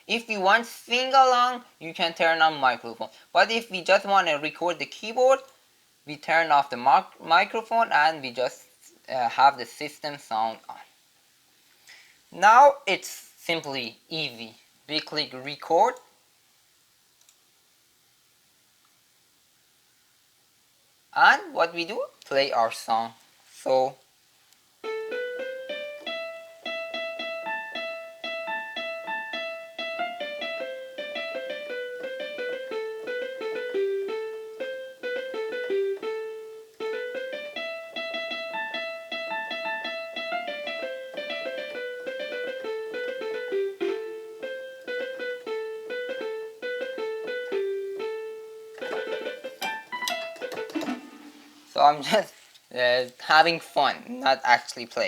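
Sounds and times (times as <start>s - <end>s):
keyboard playing piano melody: 24.8s - 51.7s.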